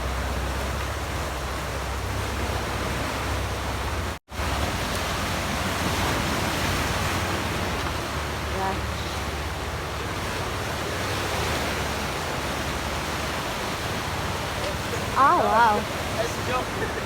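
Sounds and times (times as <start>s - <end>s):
water rushing over rocks: 0.0s - 17.0s.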